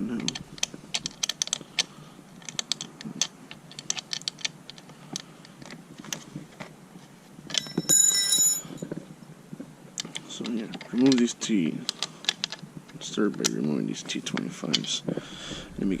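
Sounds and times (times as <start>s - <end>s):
hand tools clicking and tapping: 0.1s - 6.7s, 7.5s - 8.9s
ringing metallic clink: 7.6s - 8.8s.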